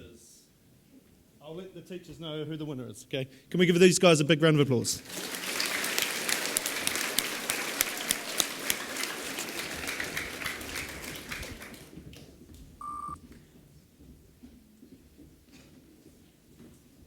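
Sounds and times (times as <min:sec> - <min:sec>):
students applauding: 0:05.0 - 0:13.1
short single-pitched beep: 0:12.8 - 0:13.2.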